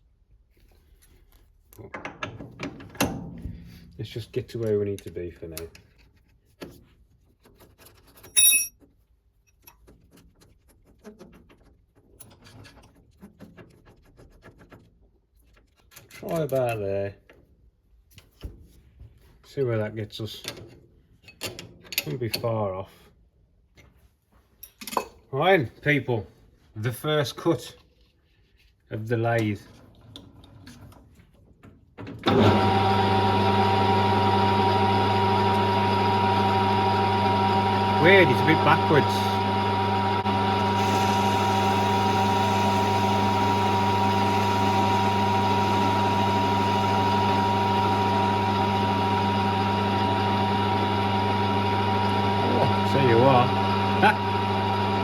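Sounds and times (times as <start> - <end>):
metal tools clicking and knocking: 8.2 - 8.8
sharp metallic clink: 8.3 - 8.7
lathe motor humming: 32.3 - 55.0
gear whine: 35.2 - 55.0.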